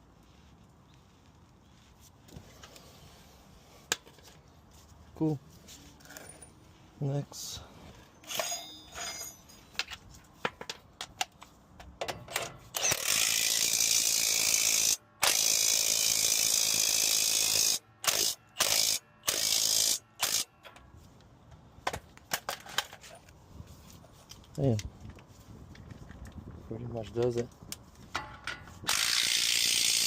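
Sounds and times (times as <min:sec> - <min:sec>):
power ratchet running: 0:12.8 - 0:20.5, 0:28.9 - 0:30.0.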